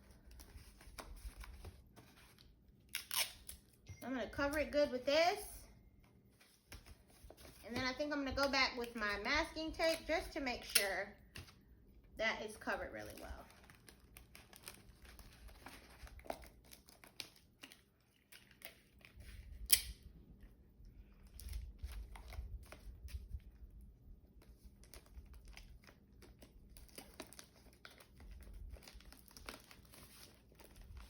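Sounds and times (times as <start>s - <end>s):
paper crinkling: 0.0s - 3.8s, 12.6s - 19.6s, 24.3s - 31.0s
masking tape tearing: 2.9s - 3.8s.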